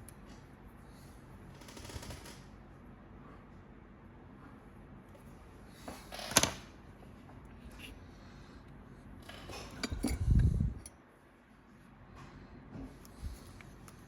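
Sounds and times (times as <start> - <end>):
tools clinking on work surface: 9.5 - 10.3.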